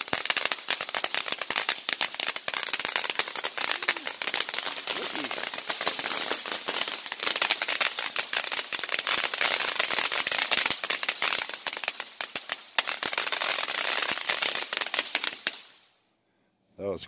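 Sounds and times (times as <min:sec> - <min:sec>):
fireworks crackling: 0:00.0 - 0:15.9.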